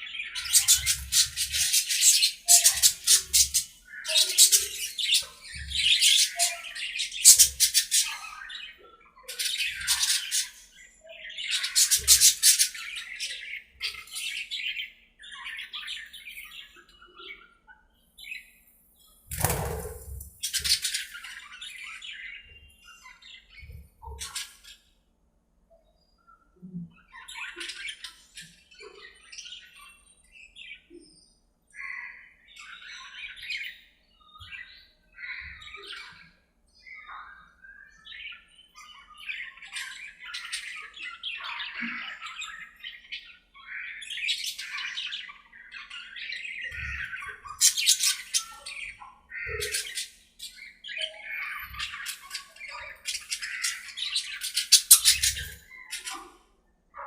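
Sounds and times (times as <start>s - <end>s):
budgerigars chattering: 0.2s - 17.4s, 19.3s - 23.2s, 38.3s - 56.4s.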